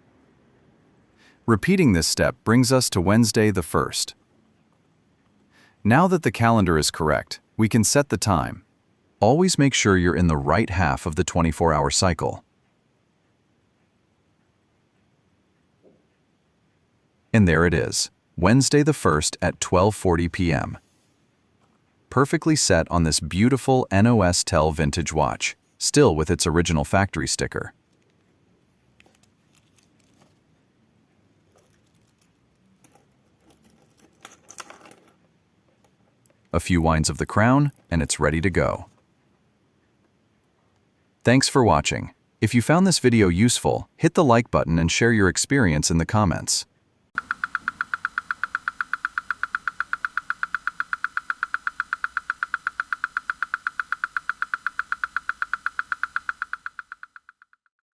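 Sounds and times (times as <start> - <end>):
mechanical wristwatch clicking: 47.2 - 57.6.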